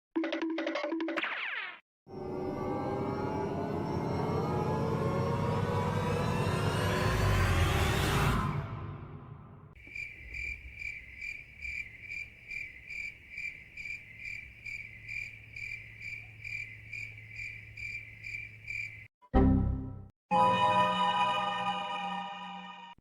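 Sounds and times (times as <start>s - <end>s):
cricket chirping: 9.8s - 19.1s.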